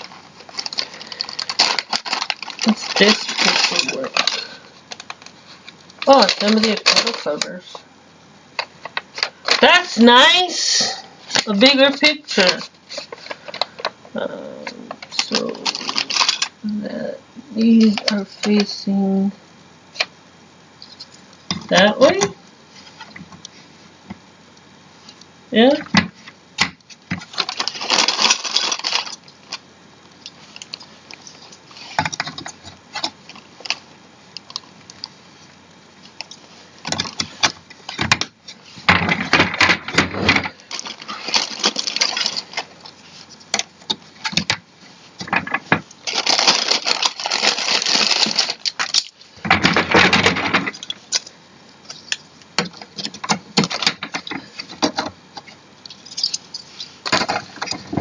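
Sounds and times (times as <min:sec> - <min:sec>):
rustling: 0:00.0 - 0:07.9, 0:08.6 - 0:16.6, 0:25.0 - 0:58.0
clicks and knocks of chair parts: 0:36.9 - 0:40.6, 0:45.2 - 0:45.9, 0:48.8 - 0:51.2, 0:52.0 - 0:58.0.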